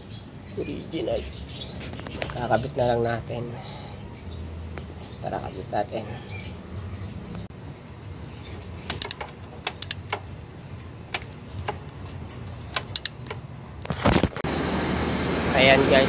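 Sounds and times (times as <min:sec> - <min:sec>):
hand tools clicking and tapping: 0:08.8 - 0:10.3, 0:11.1 - 0:13.4.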